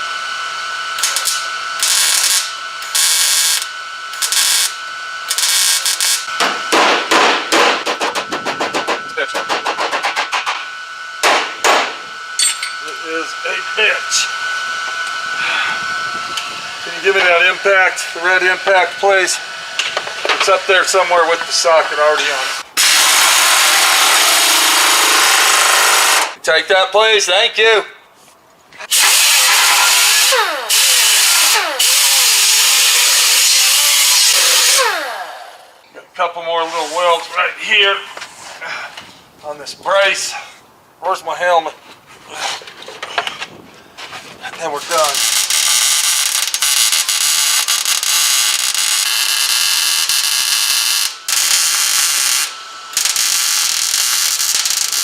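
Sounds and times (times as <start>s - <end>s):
arc welder crackling hiss: 0.9s - 6.3s, 12.0s - 26.4s, 44.6s - 55.0s
impact wrench running: 1.0s - 26.4s, 28.8s - 35.9s, 44.6s - 55.0s.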